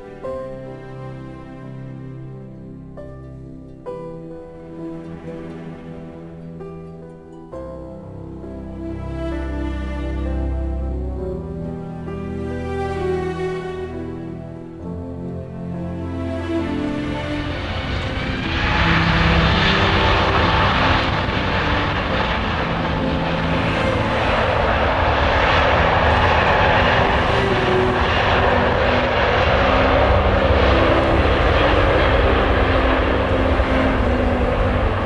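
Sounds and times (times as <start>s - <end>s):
jet plane landing: 0.0s - 35.0s.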